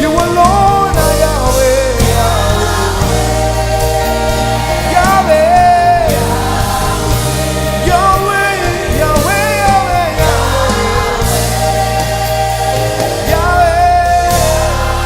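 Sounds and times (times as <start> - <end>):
band playing bass notes: 0.0 - 15.0
person singing: 0.0 - 15.0.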